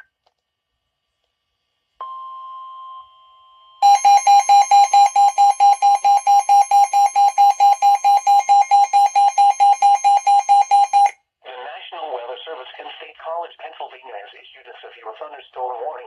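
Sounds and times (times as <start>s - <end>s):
rapidly pulsing beep: 3.8s - 11.2s.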